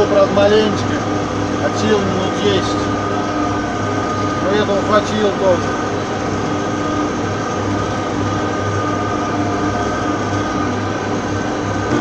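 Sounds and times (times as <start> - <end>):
tractor engine droning: 0.0 - 12.0
whining tones: 0.0 - 12.0.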